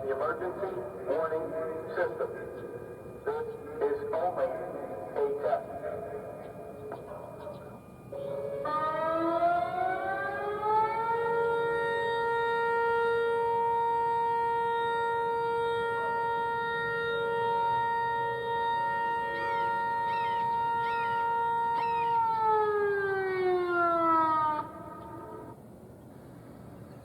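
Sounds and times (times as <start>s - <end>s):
siren winding up: 18.6s - 25.5s.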